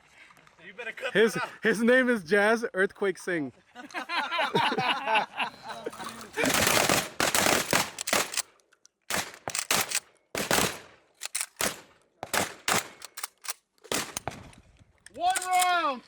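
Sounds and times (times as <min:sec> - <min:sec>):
gunshots echoing: 0:06.2 - 0:08.5, 0:09.1 - 0:14.5.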